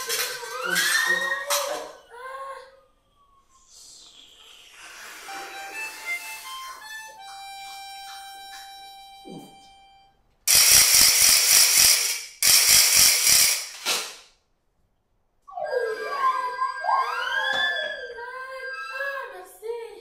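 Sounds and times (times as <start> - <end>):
reed instrument notes: 5.3 - 10.2
loud rattling bursts: 10.5 - 14.1.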